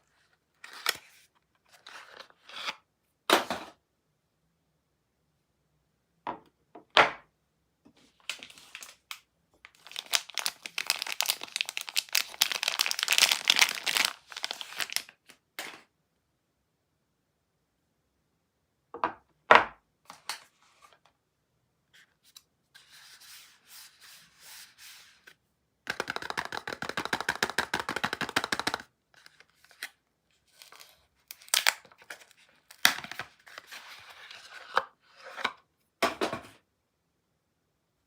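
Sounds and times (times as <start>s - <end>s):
wrapper crinkling: 8.2s - 15.3s, 30.5s - 33.7s
packaging tearing: 9.7s - 15.2s, 30.6s - 33.2s
packaging clicks: 9.8s - 15.1s.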